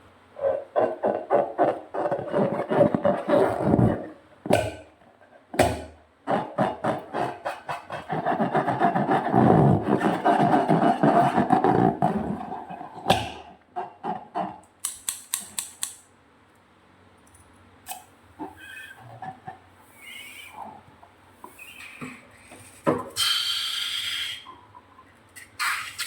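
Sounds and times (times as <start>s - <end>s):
sharp snaps: 14.8s - 16.1s.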